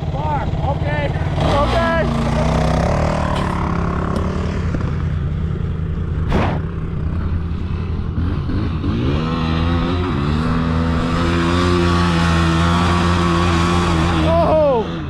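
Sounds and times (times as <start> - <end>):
vehicle engine running and revving: 0.0 - 15.0
short rushing burst: 6.2 - 6.8.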